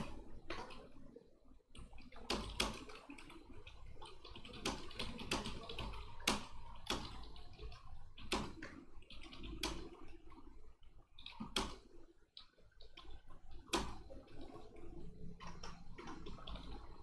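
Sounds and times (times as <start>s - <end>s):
keyboard typing clicks: 11.2s - 11.9s.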